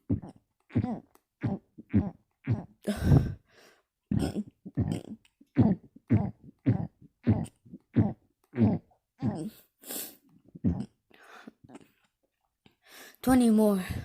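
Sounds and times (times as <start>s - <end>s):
person burping: 0.1s - 3.4s, 4.1s - 9.7s, 10.6s - 11.0s.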